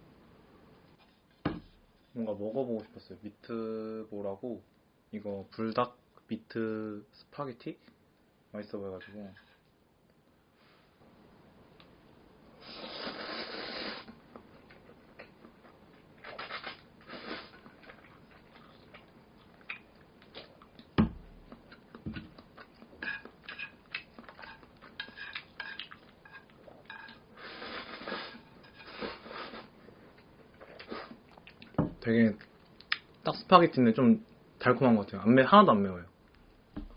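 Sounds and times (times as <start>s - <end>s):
sharp thump: 1.4s - 1.7s
noodles being slurped: 12.6s - 14.2s, 16.2s - 18.6s, 27.4s - 29.7s.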